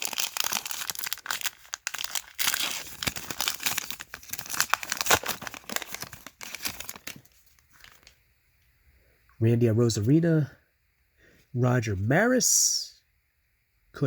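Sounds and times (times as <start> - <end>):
plastic wrapper crinkling and tearing: 0.0 - 8.2.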